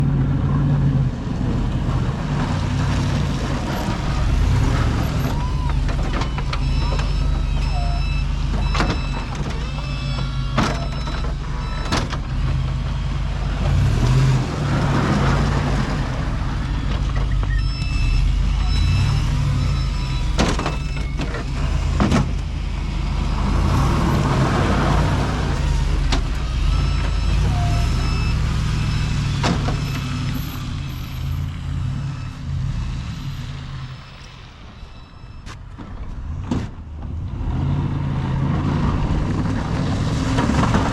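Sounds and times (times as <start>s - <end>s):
truck engine rumble: 0.0s - 40.9s
electronic beeps: 3.8s - 12.1s, 15.9s - 22.0s, 26.6s - 30.0s, 33.9s - 35.5s.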